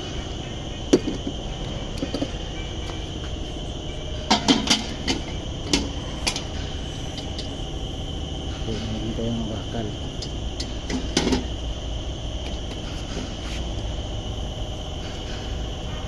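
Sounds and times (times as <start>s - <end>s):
high-pitched drone: 0.0s - 16.0s
metal knocks and clanks: 4.2s - 6.5s.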